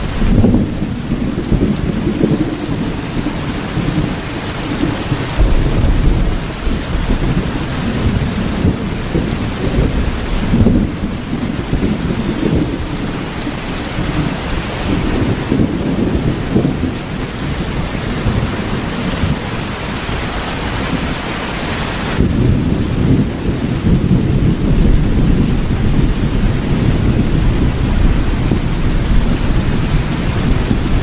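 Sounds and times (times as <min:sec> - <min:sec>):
thunder rumbling: 0:00.0 - 0:19.6, 0:22.2 - 0:31.0
steady rain: 0:00.0 - 0:31.0.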